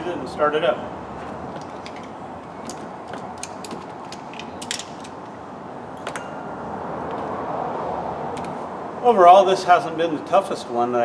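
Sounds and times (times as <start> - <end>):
steady background hiss: 0.0 - 11.0.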